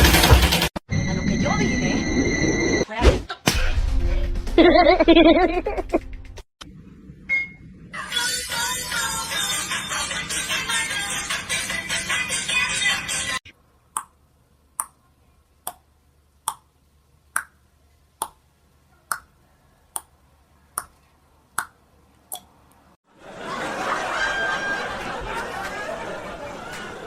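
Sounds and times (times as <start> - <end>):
music: 0.0 - 0.7, 3.5 - 4.8, 5.8 - 6.4, 8.0 - 13.4.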